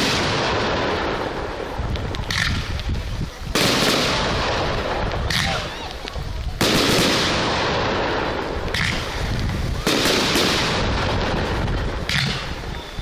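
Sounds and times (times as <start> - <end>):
rumbling firework bursts: 0.0 - 13.0
sharp firework cracks: 0.0 - 13.0.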